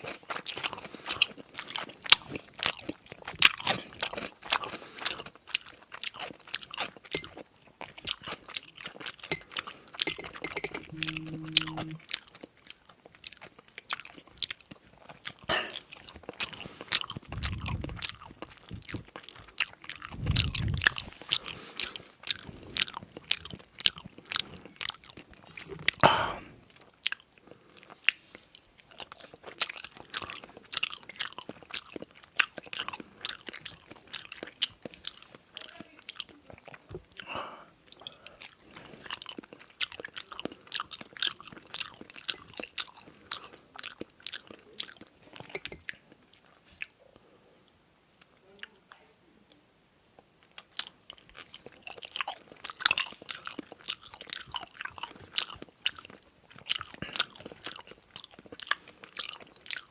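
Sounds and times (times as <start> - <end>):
person chewing food: 0.0 - 48.7, 50.2 - 59.9
wet mouth clicks and crunches: 12.6 - 26.1.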